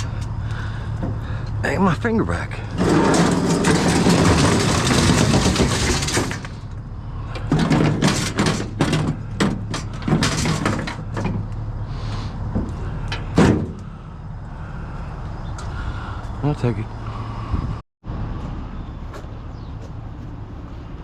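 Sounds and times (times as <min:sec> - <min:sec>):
rustling and scraping: 0:02.6 - 0:13.9
sharp knocks and clatters: 0:02.7 - 0:06.8, 0:07.4 - 0:11.6.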